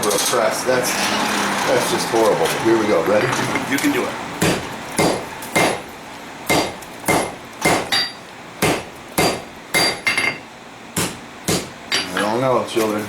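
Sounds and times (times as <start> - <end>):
hammer striking metal on anvil: 4.4 - 5.9, 6.5 - 10.4, 11.0 - 12.3.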